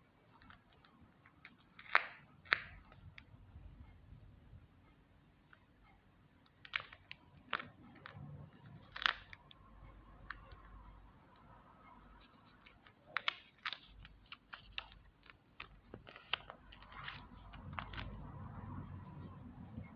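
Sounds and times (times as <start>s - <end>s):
paper snaps: 1.4s - 3.0s
paper crinkling: 6.6s - 9.6s, 12.1s - 18.2s.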